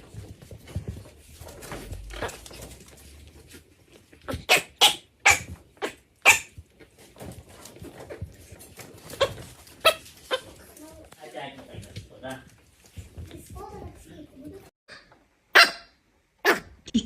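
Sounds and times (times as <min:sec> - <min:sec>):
dog barking: 0:04.4 - 0:06.5, 0:15.5 - 0:16.7.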